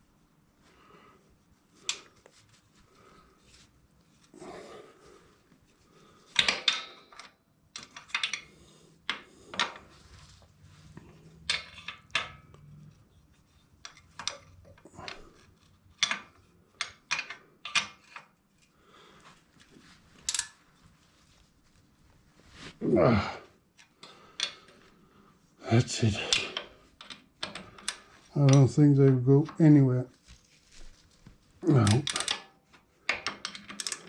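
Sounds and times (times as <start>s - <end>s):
metal tools clinking: 31.7s - 32.5s.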